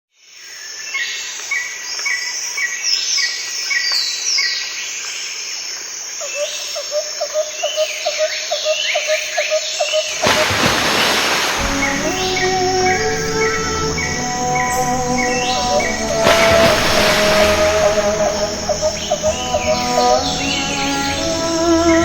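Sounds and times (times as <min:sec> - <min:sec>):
birds singing in chorus: 0:07.6 - 0:22.0.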